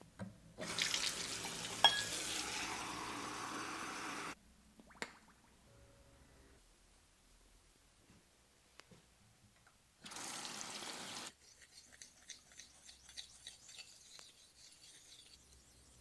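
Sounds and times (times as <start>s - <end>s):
water running from a tap: 0.6s - 4.4s, 10.0s - 11.3s.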